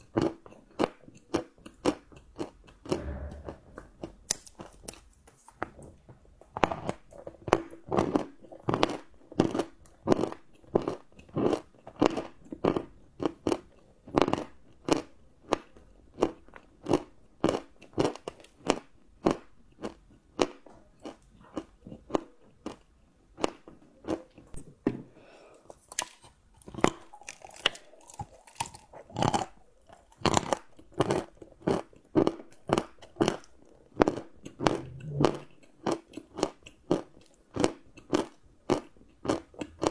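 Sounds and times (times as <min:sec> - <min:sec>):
chewing crunchy chocolate: 0:25.8 - 0:31.1, 0:32.2 - 0:39.9.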